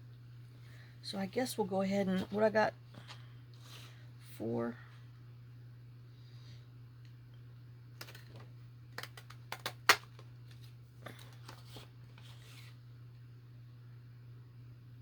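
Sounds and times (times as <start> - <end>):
low steady hum: 0.0 - 15.0
paper rustling: 10.5 - 12.8.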